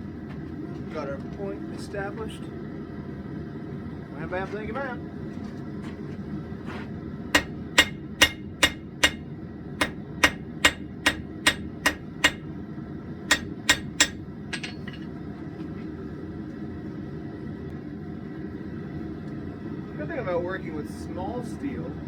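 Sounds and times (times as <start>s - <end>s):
steady low hum: 0.0s - 22.0s
hammer striking steel on anvil: 7.4s - 12.5s, 13.3s - 15.1s.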